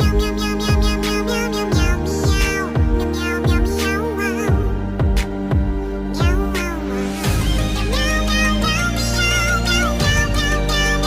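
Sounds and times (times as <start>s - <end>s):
electronic music: 0.0s - 11.0s.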